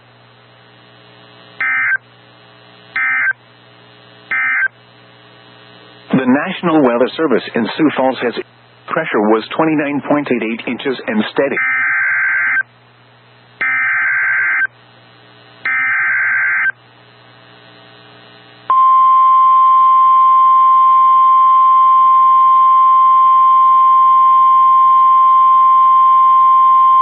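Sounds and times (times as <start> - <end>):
radio hiss: 0.5 - 11.7, 14.5 - 15.7, 16.4 - 18.7
steady alarm tone: 1.6 - 2.0, 3.0 - 3.4, 4.3 - 4.7, 11.5 - 12.6, 13.6 - 14.7, 15.7 - 16.8.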